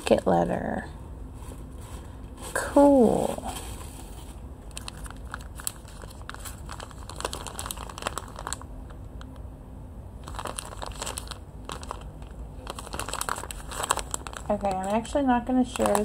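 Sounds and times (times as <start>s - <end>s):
plastic sleeves crinkling: 1.3s - 9.4s, 10.2s - 16.0s.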